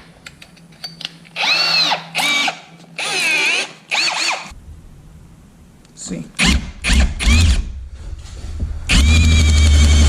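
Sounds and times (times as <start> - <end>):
power drill drilling wood: 1.4 - 4.5, 8.9 - 10.0.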